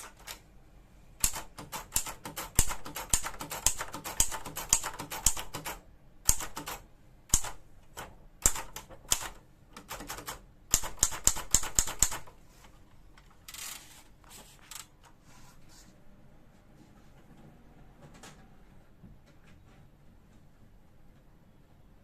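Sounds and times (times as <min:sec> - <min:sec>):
manual typewriter typing: 0:00.0 - 0:00.4, 0:01.2 - 0:12.4.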